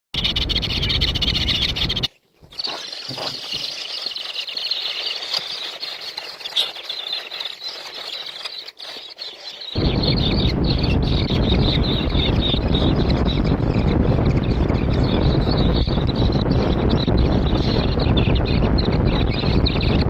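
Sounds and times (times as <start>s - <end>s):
many birds chirping: 0.2s - 20.0s
loud low rumble: 9.8s - 20.0s.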